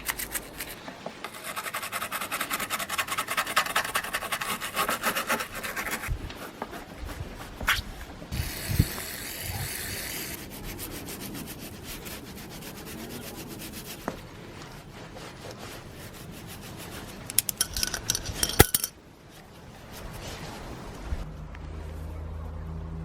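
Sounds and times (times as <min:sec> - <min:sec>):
brush scrubbing strokes: 0:00.0 - 0:21.3
sharp clicks and clinks: 0:17.3 - 0:19.0.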